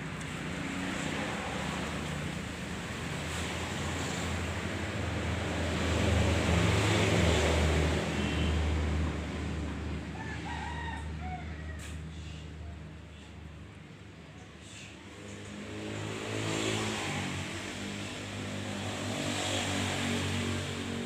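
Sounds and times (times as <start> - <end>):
passing motor vehicle rumble: 0.0 - 21.0
rooster crowing: 10.1 - 12.2.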